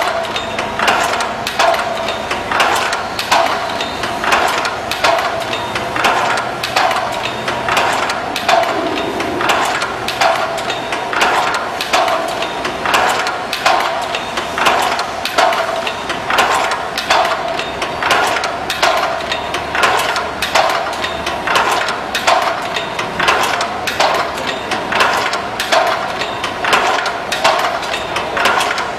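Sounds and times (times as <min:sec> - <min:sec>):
machine metal clatter: 0:00.0 - 0:19.2, 0:21.5 - 0:28.9
steady ringing hum: 0:07.0 - 0:11.1.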